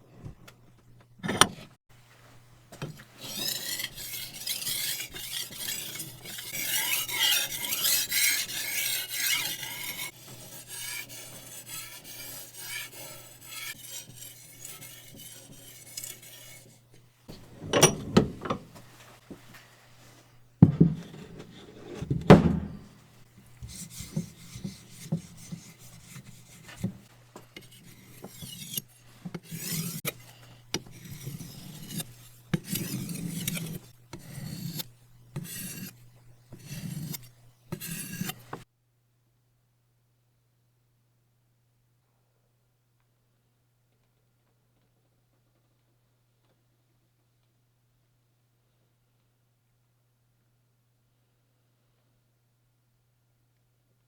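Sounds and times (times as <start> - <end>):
rasping metal and wood: 1.2 - 1.8, 2.8 - 19.6, 20.7 - 38.6.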